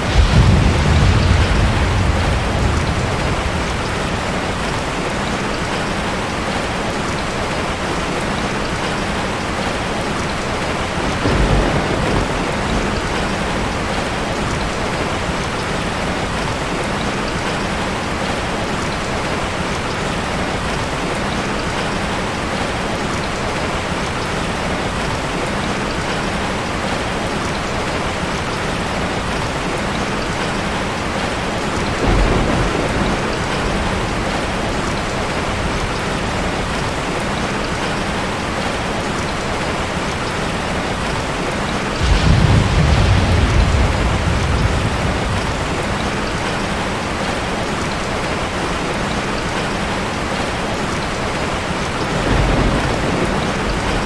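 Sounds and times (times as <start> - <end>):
low rumbles of thunder: 0.0 - 6.6, 10.8 - 16.4, 31.7 - 37.3, 42.0 - 48.2, 51.9 - 54.0
heavy rain pouring: 0.0 - 54.0.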